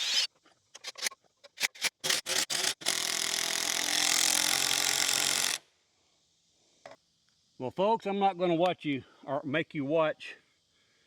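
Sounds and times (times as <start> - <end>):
power drill boring into wood: 0.0 - 1.0, 1.6 - 5.6.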